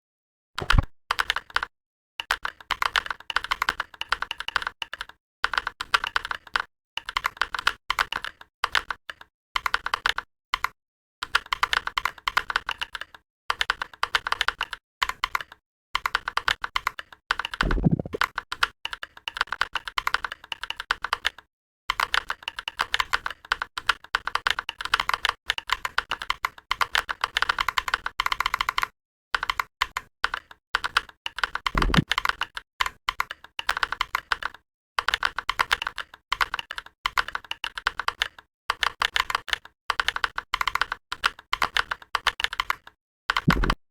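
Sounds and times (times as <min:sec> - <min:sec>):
mechanical keyboard fast typing: 0:00.6 - 0:10.7, 0:11.3 - 0:43.8.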